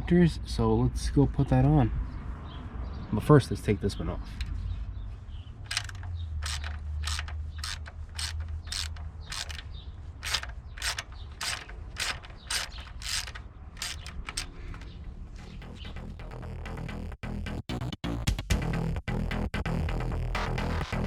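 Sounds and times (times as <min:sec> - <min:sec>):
ratchet wrench clicking: 0:05.7 - 0:14.9.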